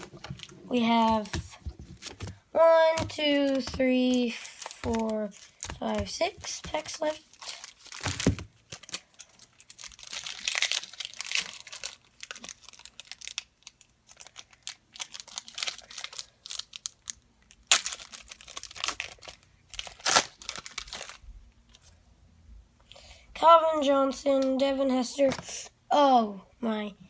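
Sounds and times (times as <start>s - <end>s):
card pack wrapper crinkling: 0.0s - 21.2s
sharp wrapper rips: 7.3s - 21.2s.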